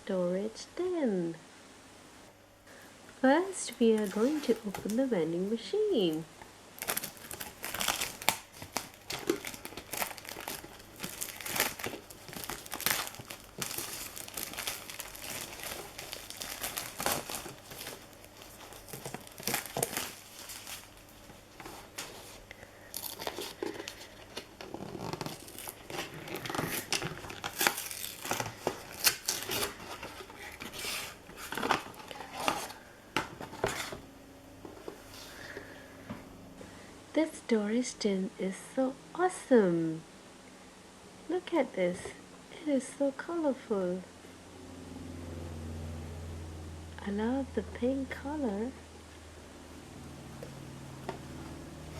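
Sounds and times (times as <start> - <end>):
packaging crinkling and tearing: 3.6 - 5.1, 6.8 - 34.0.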